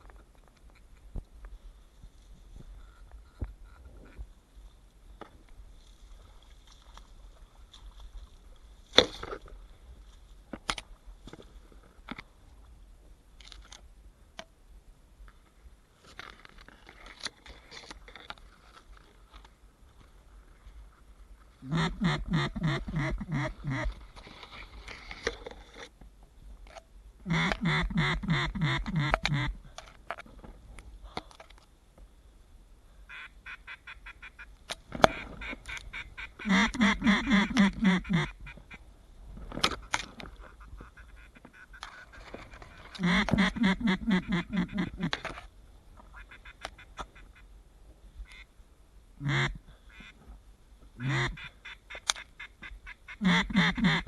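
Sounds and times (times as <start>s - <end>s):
duck call quacks: 21.6s - 24.0s, 27.3s - 29.6s, 33.1s - 38.8s, 40.4s - 42.2s, 42.9s - 45.2s, 46.1s - 47.4s, 48.2s - 48.5s, 49.2s - 50.2s, 51.0s - 54.0s.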